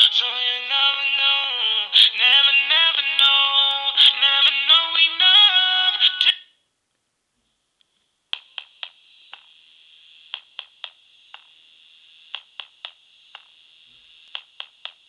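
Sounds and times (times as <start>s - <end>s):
high electronic hum: 8.4s - 15.0s.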